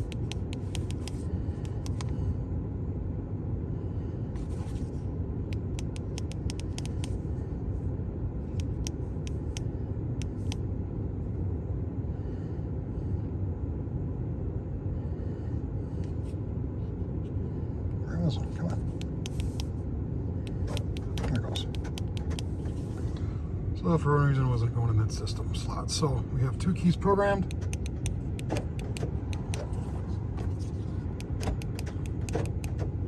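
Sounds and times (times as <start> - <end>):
sharp clicks: 5.6 - 7.2, 20.5 - 22.6, 27.5 - 29.8, 31.2 - 32.9.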